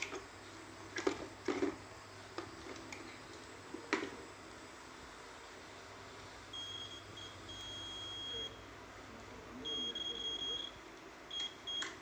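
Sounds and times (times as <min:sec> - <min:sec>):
multimeter continuity beeps: 0:06.5 - 0:08.6, 0:09.6 - 0:12.0.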